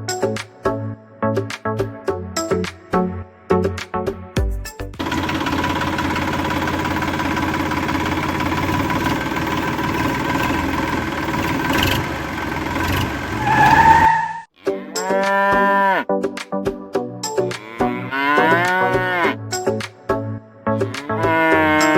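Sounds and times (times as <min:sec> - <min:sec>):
engine-like running noise: 0:05.0 - 0:14.2
cow mooing: 0:15.0 - 0:16.0, 0:17.6 - 0:19.4, 0:21.0 - 0:21.9.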